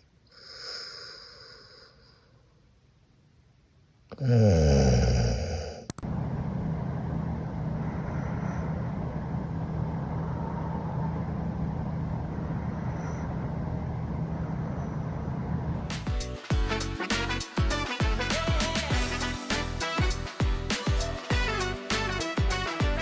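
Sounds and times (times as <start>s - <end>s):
click: 5.9s - 6.1s
low rumbling hum: 6.0s - 20.7s
music: 15.9s - 23.0s.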